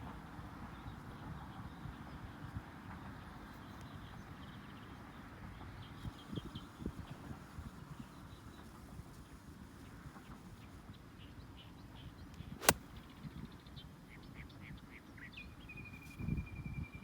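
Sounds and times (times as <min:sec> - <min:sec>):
golf club striking ball: 0:12.6 - 0:12.8.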